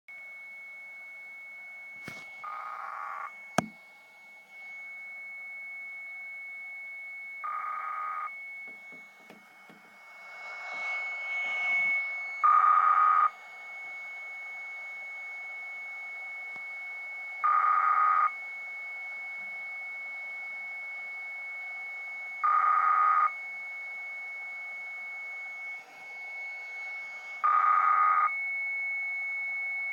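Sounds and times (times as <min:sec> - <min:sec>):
steady high radio tone: 0:00.2 - 0:29.9
radio hiss: 0:02.1 - 0:03.3, 0:07.5 - 0:13.3.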